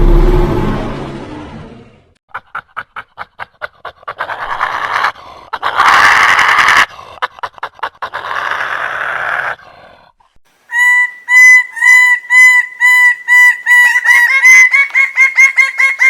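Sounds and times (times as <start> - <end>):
creature panting: 2.5 - 5.8, 6.8 - 8.4.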